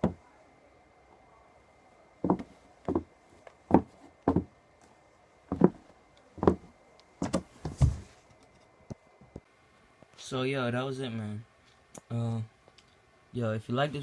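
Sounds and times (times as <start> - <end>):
faint taps: 2.2 - 4.5
footsteps in sneakers: 2.2 - 8.3.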